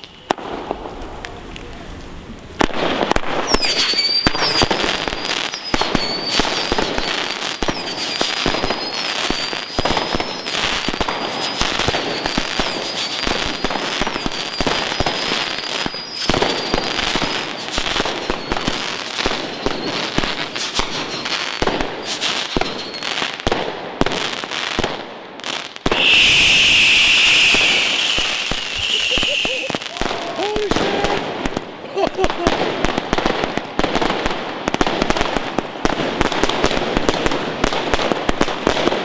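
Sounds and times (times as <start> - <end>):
firecrackers banging and crackling: 0.0 - 1.8, 2.6 - 39.0
high firework whistle: 3.4 - 23.3, 25.9 - 31.2
loud steady hiss: 25.9 - 30.7.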